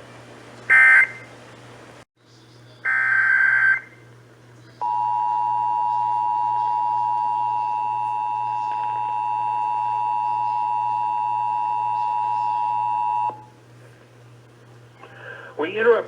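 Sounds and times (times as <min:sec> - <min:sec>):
faint low hum: 0:02.2 - 0:16.0
two-tone alert alarm: 0:02.9 - 0:04.0, 0:04.8 - 0:13.4.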